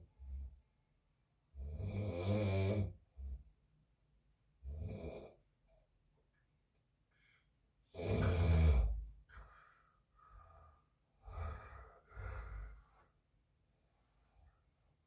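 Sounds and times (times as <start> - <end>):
quiet breaths: 0.0 - 0.9, 4.6 - 15.0
man snoring: 1.6 - 2.9, 8.0 - 9.0.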